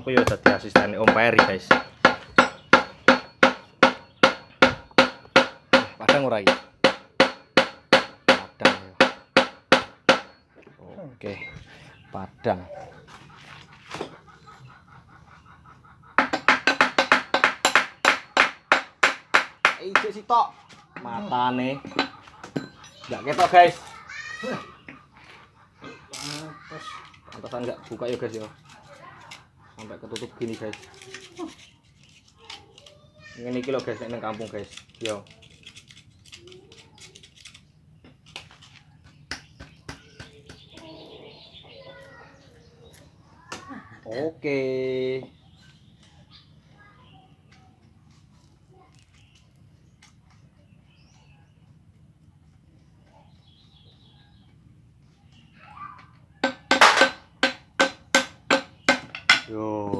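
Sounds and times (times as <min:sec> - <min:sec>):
hand tools knocking and clicking: 0:00.0 - 0:10.4, 0:16.2 - 0:20.3, 0:21.0 - 0:23.9, 0:56.4 - 0:59.6
rapid hammer blows on metal: 0:00.1 - 0:10.4, 0:16.2 - 0:20.2, 0:56.4 - 0:59.5.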